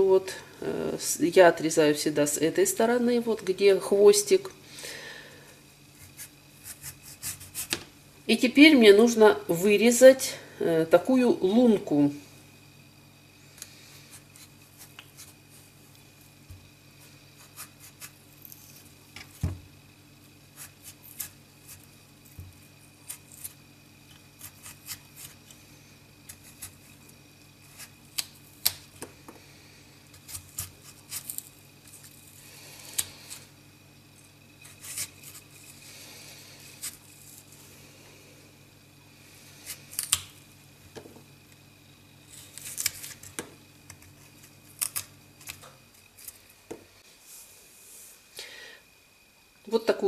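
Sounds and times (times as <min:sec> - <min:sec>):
knife scraping radish: 0:05.9 - 0:07.8, 0:14.0 - 0:15.8, 0:17.0 - 0:18.9, 0:20.5 - 0:25.6, 0:26.3 - 0:27.0, 0:27.6 - 0:28.8, 0:30.1 - 0:33.5, 0:34.2 - 0:37.6, 0:42.3 - 0:45.6.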